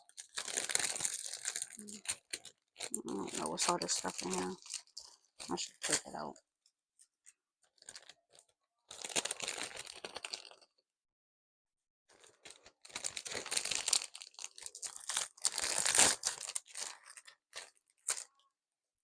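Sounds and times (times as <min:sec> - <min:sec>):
packaging crinkling and tearing: 0:00.0 - 0:06.2, 0:07.7 - 0:10.7, 0:12.1 - 0:18.4.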